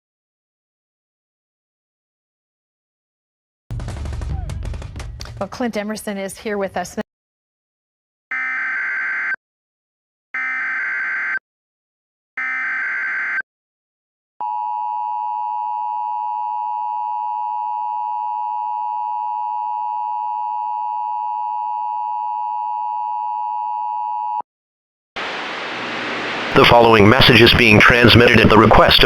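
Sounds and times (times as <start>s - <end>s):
steady two-tone attention signal: 25.5s - 29.0s
digital data tone bursts: 26.5s - 29.0s.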